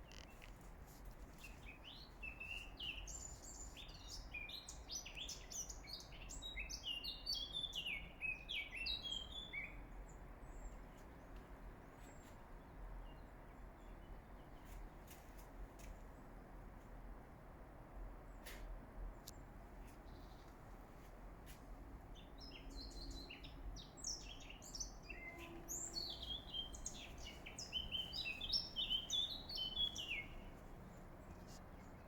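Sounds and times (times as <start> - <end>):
songbird singing: 0.0 - 0.7, 1.3 - 15.0, 22.0 - 32.0.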